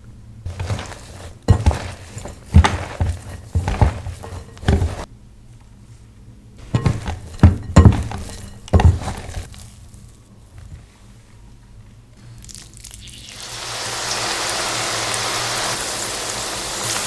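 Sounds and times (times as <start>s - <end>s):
utensils and bowls clinking: 0.5s - 5.1s, 6.6s - 10.1s.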